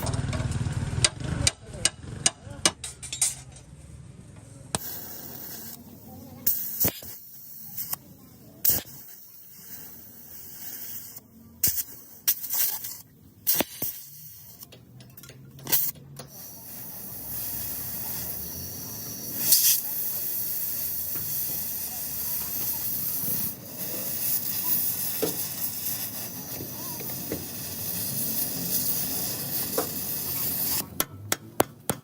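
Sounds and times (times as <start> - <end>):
spraying air hiss: 4.8 - 15.0, 15.6 - 31.0.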